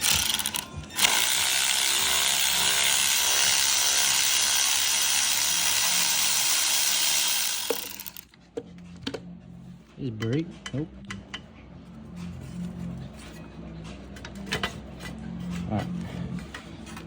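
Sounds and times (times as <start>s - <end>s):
cordless power tool buzzing: 0.0s - 8.2s.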